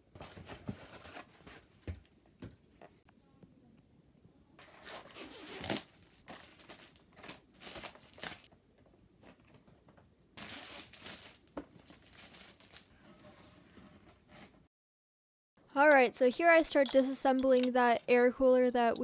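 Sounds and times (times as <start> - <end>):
packaging rustling and crinkling: 4.6 - 8.5, 10.4 - 13.0.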